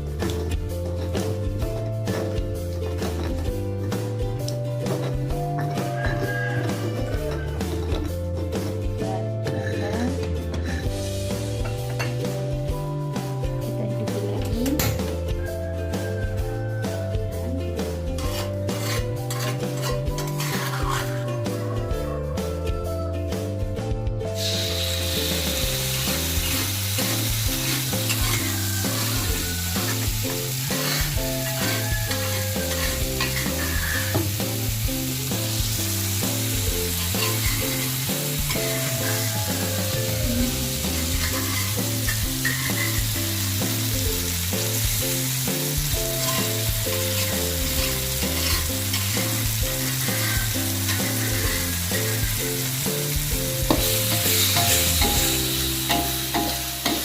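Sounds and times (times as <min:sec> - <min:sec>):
background music with bass: 0:00.0 - 0:57.0
food sizzling in oil: 0:00.2 - 0:08.8, 0:10.9 - 0:13.4, 0:14.8 - 0:21.9, 0:24.3 - 0:57.0
spoon scraping pan: 0:18.2 - 0:21.3, 0:26.5 - 0:34.4, 0:37.0 - 0:43.1, 0:46.2 - 0:52.3.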